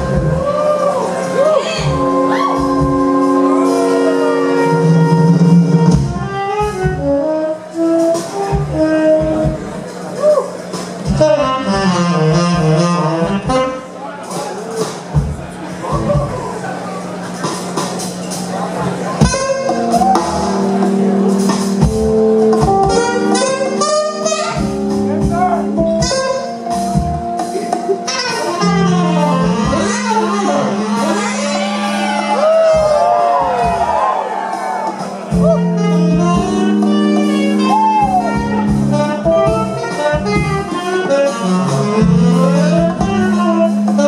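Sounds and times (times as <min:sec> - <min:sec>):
bass: 0:00.0 - 0:44.0
jazz fusion band playing: 0:00.0 - 0:44.0
drum hits: 0:32.7 - 0:40.8.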